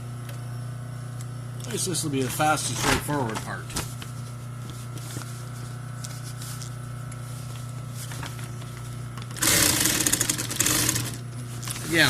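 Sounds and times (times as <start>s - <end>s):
sewing machine stitching: 9.4s - 11.2s.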